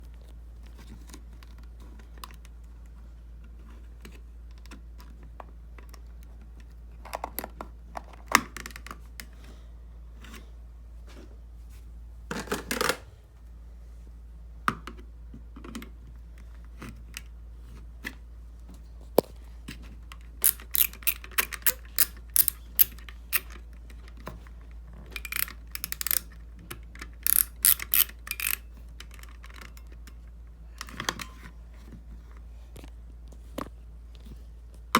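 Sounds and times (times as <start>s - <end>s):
pull station clicking: 20.4s - 23.5s, 25.2s - 26.3s, 27.3s - 28.6s
short rattle: 27.3s - 28.6s.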